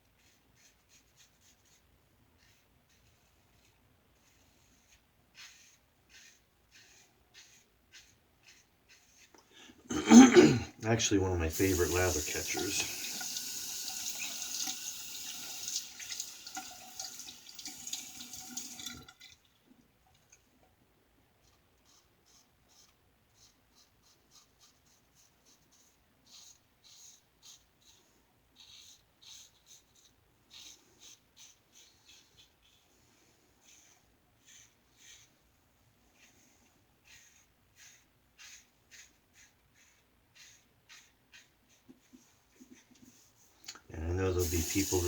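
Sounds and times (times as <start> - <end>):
tap water running into sink: 11.5 - 19.4, 44.4 - 45.0
razor scraping stubble: 11.6 - 13.1, 44.2 - 45.0.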